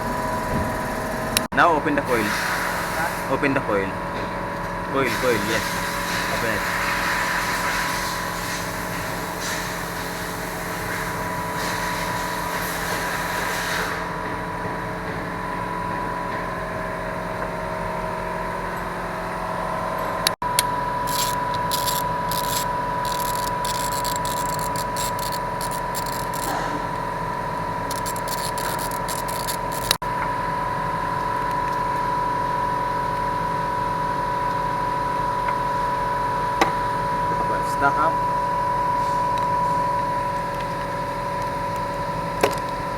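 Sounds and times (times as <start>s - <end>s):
machine hum with high whine: 0.0s - 42.9s
hand tools clicking and scraping: 21.0s - 26.8s, 27.9s - 30.0s.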